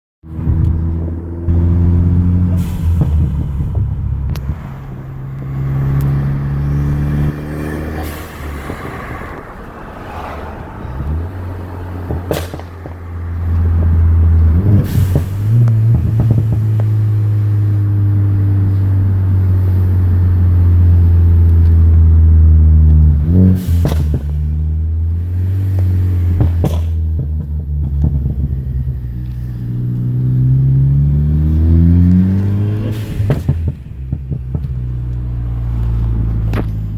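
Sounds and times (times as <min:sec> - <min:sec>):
car engine revving: 0:00.3 - 0:36.9
exhaust pops and crackles: 0:03.0 - 0:06.2, 0:11.9 - 0:17.2, 0:22.8 - 0:24.6, 0:25.2 - 0:29.5, 0:32.1 - 0:36.9.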